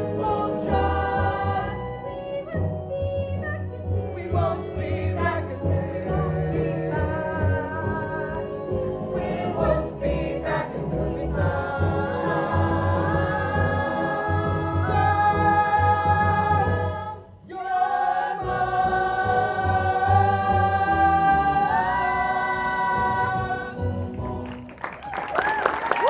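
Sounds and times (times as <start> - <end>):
choir singing with accompaniment: 0.0 - 24.6
applause and cheering: 24.2 - 26.0.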